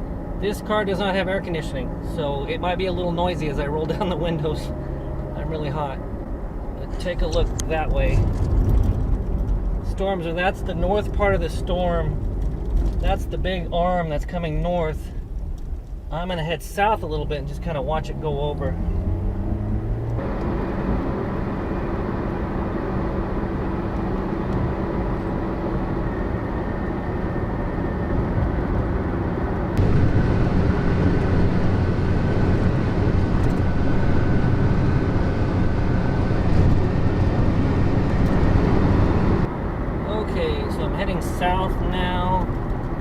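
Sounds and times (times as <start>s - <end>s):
car engine: 0.0s - 43.0s
wind noise: 6.2s - 13.4s, 20.1s - 43.0s.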